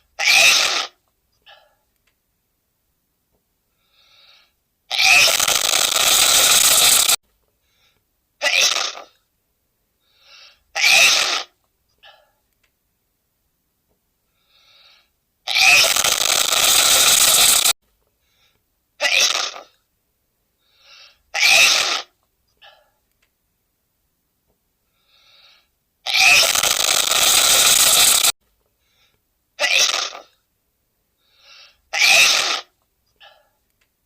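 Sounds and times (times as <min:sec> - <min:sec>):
faint breath in: 0:03.7 - 0:04.6, 0:07.6 - 0:08.0, 0:10.0 - 0:10.7, 0:14.2 - 0:15.2, 0:18.2 - 0:18.6, 0:20.5 - 0:21.3, 0:24.8 - 0:25.8, 0:28.7 - 0:29.2, 0:31.2 - 0:31.9
man sneezing: 0:21.4 - 0:22.1, 0:32.0 - 0:32.7.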